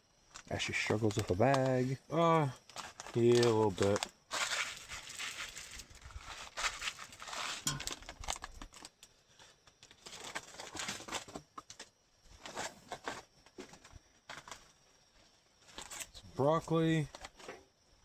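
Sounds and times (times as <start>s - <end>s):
plastic bag crinkling: 0.3s - 2.0s, 2.6s - 12.7s.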